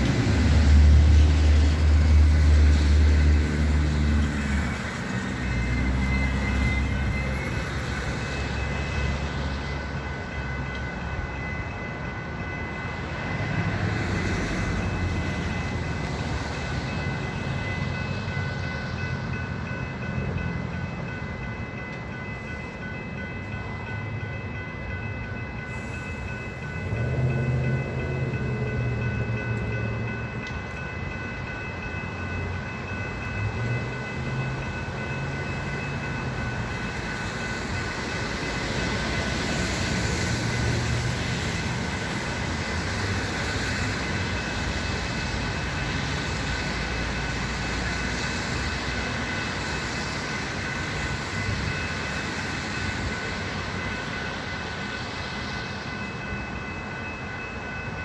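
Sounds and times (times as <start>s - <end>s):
moving train rumble: 0.0s - 58.0s.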